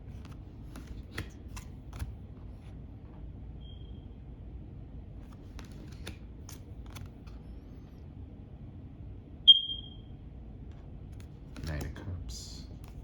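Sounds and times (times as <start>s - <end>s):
cards flipping with light clicks: 0.0s - 2.8s, 5.2s - 8.0s, 10.8s - 13.0s.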